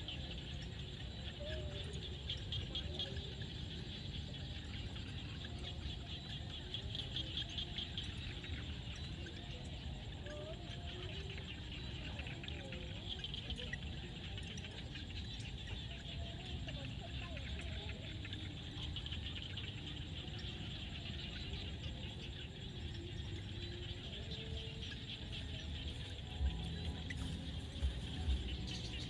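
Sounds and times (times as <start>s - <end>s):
frogs and insects calling: 0.0s - 29.0s
high pulsing trill: 25.6s - 29.0s.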